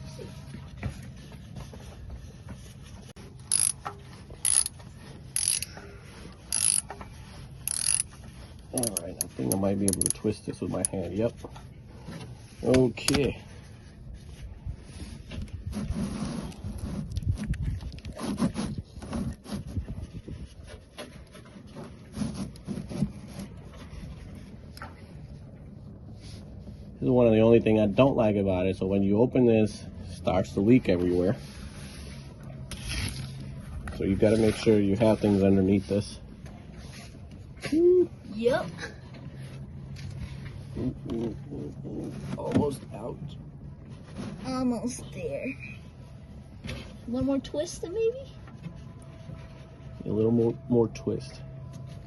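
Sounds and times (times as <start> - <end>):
socket ratchet clicking: 7.7 - 8.1.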